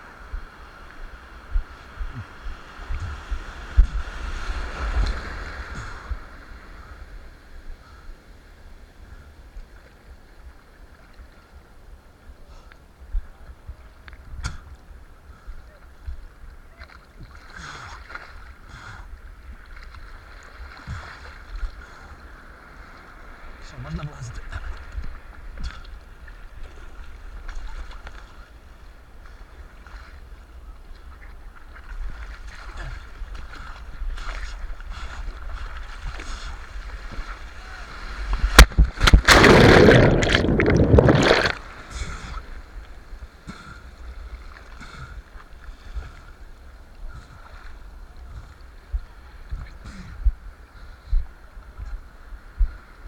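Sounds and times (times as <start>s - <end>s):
seawater splashing and rushing: 0.0s - 7.0s, 31.7s - 49.9s
wind rumble on microphone: 0.0s - 7.9s, 30.2s - 43.4s, 45.8s - 53.0s
water splashing and sloshing: 0.2s - 7.0s, 9.5s - 52.9s.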